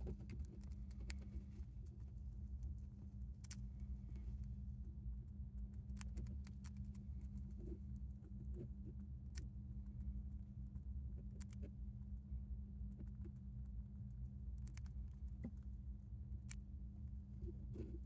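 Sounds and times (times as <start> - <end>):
steady low hum: 0.0 - 18.0
hamster drinking clicks: 0.2 - 4.3, 5.0 - 11.8.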